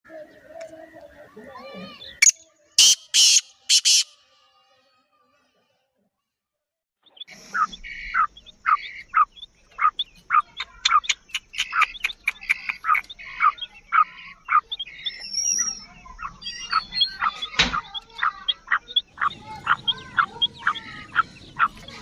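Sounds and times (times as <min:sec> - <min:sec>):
francolin calling harsh notes: 0:02.2 - 0:04.2.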